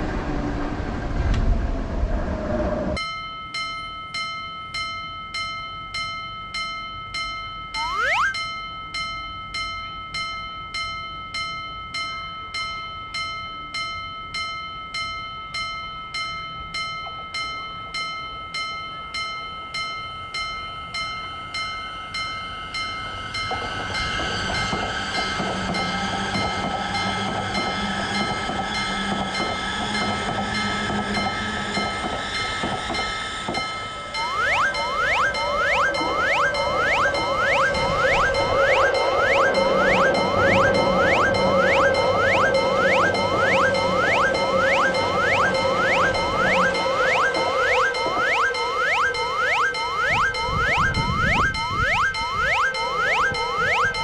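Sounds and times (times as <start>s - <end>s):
train passing on rails: 0.0s - 3.0s, 16.7s - 54.0s
level-crossing warning bell: 3.0s - 54.0s
rising chime sounds: 7.7s - 8.8s, 20.2s - 54.0s.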